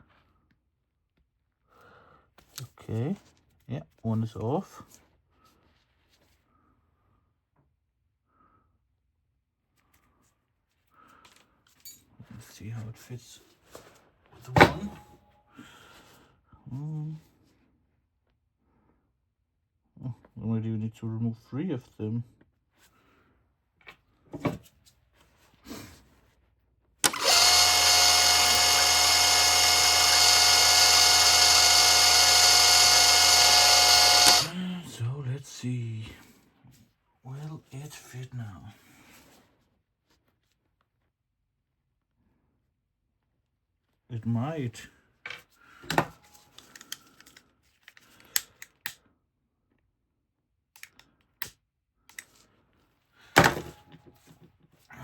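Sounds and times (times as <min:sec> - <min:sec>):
power tool switch click: 0:27.0 - 0:34.5
power tool motor running: 0:27.0 - 0:34.6.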